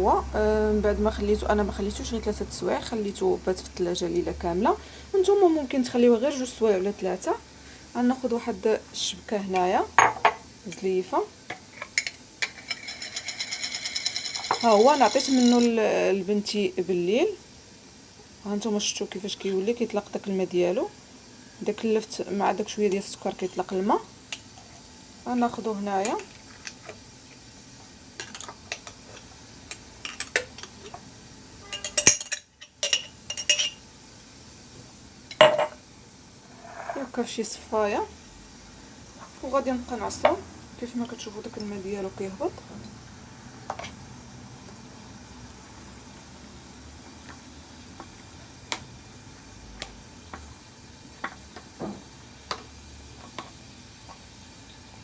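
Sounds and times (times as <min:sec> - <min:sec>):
spoon and sieve clinking on bowl: 0:12.0 - 0:15.7, 0:31.6 - 0:33.8.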